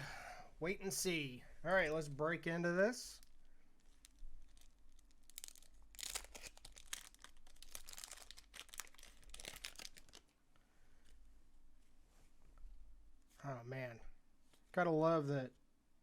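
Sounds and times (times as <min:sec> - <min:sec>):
wrapping crinkling and tearing: 0:03.2 - 0:10.4.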